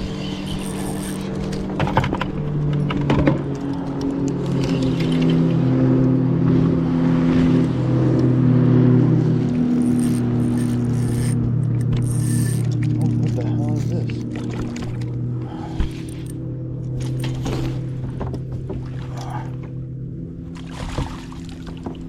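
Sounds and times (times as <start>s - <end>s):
motor running steadily: 0.0s - 22.0s.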